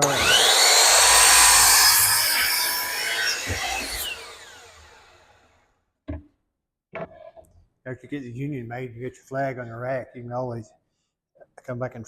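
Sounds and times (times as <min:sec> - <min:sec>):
electric saw cutting wood: 0:00.0 - 0:05.6.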